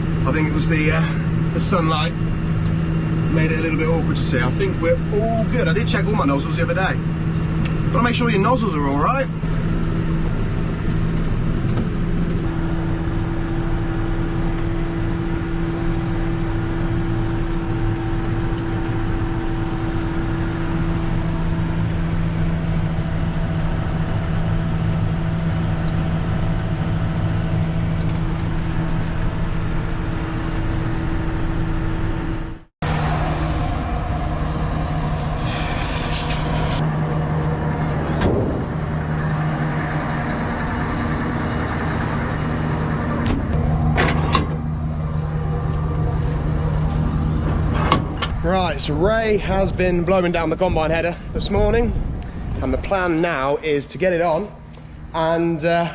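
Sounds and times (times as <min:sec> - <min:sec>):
another engine: 0:00.0 - 0:55.9
tractor engine hum: 0:00.0 - 0:55.9
hiss: 0:33.2 - 0:36.8.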